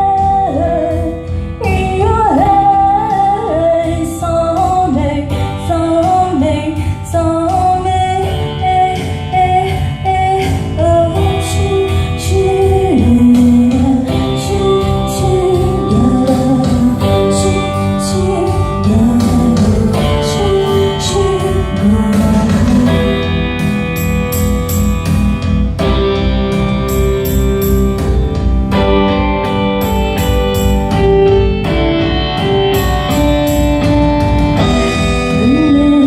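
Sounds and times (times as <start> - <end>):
person singing: 0.0 - 24.2, 28.8 - 36.0
guitar: 0.0 - 36.0
steady beat: 12.4 - 36.0.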